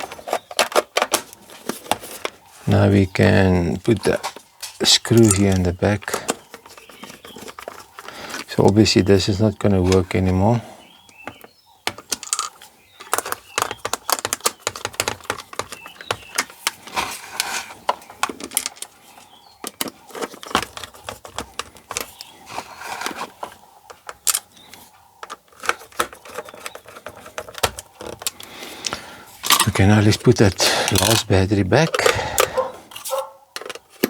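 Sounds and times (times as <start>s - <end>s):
plastic casing clicks and rattles: 0.0s - 2.4s, 5.0s - 8.8s, 11.1s - 16.8s, 25.2s - 34.0s.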